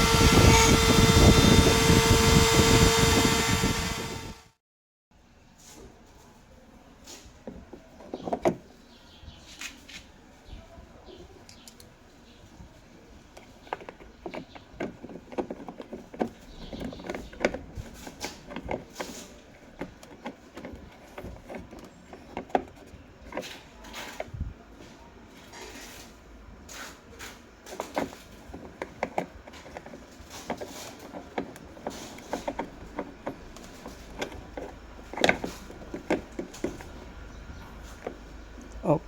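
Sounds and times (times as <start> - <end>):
hard plastic clicks and knocks: 13.4 - 24.3, 27.7 - 38.8.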